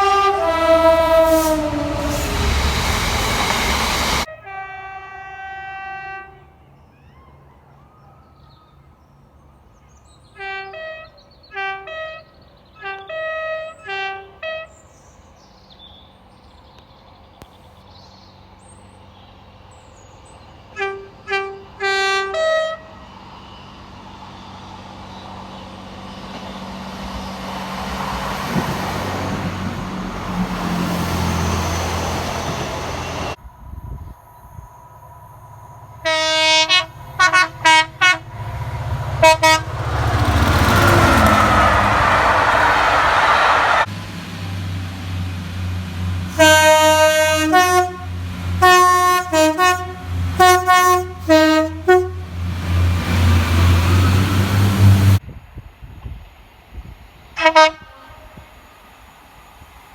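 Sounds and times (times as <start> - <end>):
approaching train rumble: 0.0 - 6.4, 13.2 - 59.9
short horn toots: 0.0 - 6.4, 46.3 - 52.3
train horn chord: 0.0 - 6.6, 20.8 - 23.0, 36.0 - 43.9, 44.5 - 55.2, 57.4 - 58.7
passing train noise: 0.0 - 6.7, 12.8 - 59.9
train horn: 0.0 - 6.8, 10.4 - 15.0, 20.7 - 23.2, 36.0 - 43.9, 45.0 - 55.2, 57.4 - 58.8.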